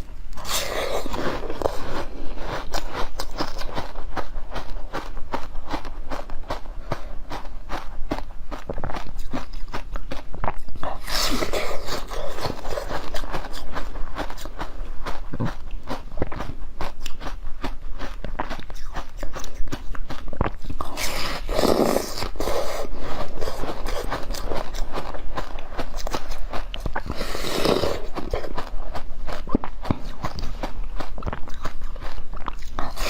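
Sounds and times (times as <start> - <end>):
crunching and chewing: 0.0 - 33.0
mouth clicks: 5.3 - 33.0.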